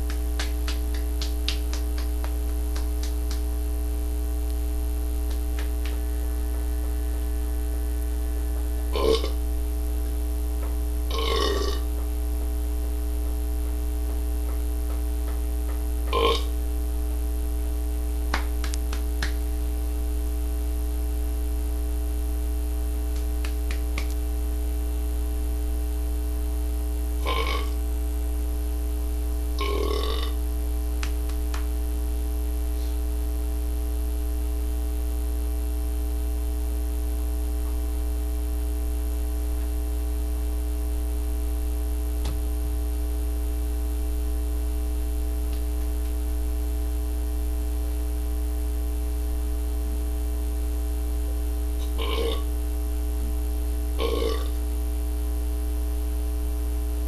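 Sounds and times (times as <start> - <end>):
loud low hum: 0.0 - 57.0
person burping: 8.9 - 9.4, 11.1 - 11.9, 16.1 - 16.6, 27.2 - 27.8, 29.6 - 30.4, 51.8 - 52.5, 54.0 - 54.6.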